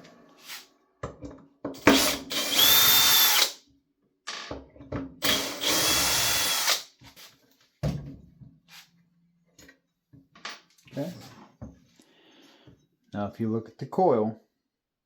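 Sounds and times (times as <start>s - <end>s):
power drill whining: 1.8s - 3.6s, 5.2s - 6.9s.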